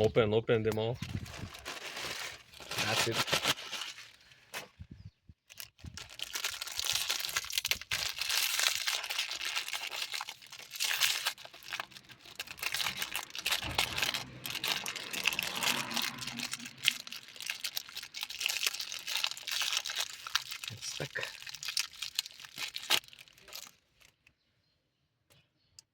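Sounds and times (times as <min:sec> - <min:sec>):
packaging crinkling: 0:01.0 - 0:04.7, 0:05.5 - 0:24.2.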